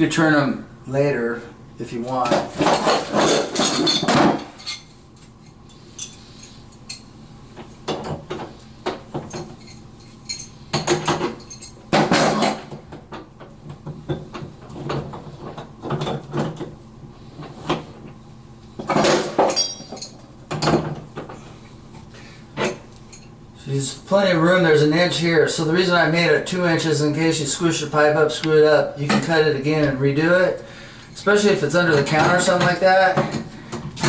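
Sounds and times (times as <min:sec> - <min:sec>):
metallic clinks and knocks: 0:09.2 - 0:12.6, 0:18.9 - 0:20.8.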